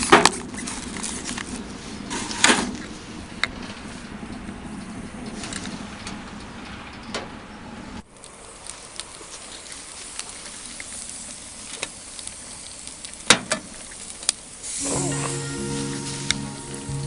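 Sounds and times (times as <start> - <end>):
fire hissing: 0.0 - 6.0, 7.9 - 17.0
wood fire crackling and popping: 8.0 - 17.0.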